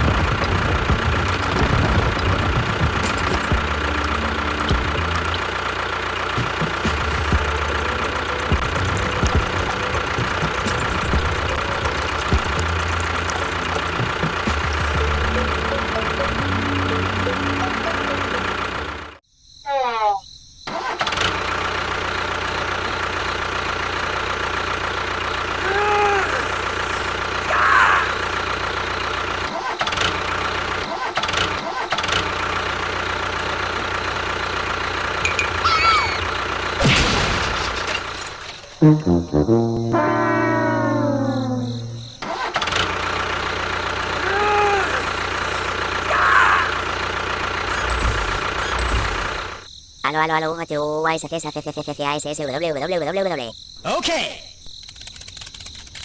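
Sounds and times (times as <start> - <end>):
engine idling: 0.0 - 19.2, 21.4 - 38.2, 42.0 - 49.7
small motor humming: 0.9 - 19.1, 46.8 - 49.7
rising and falling tone: 6.4 - 19.2, 38.8 - 42.2
short rising-and-falling tone: 38.8 - 42.2.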